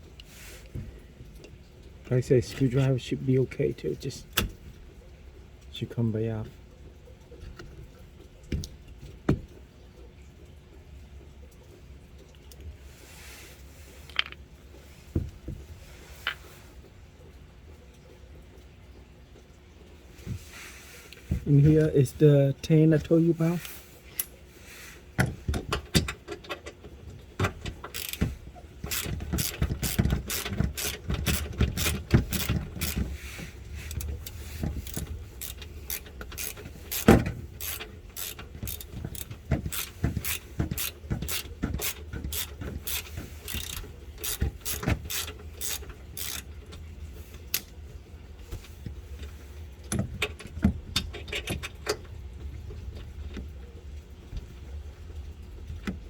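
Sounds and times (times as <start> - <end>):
low steady hum: 0.0 - 56.0
ratchet wrench clicking: 27.9 - 33.1, 33.9 - 46.5.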